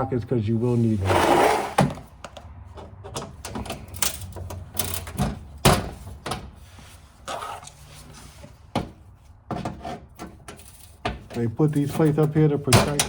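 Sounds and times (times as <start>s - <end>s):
hand tools clicking and knocking: 9.5s - 13.0s.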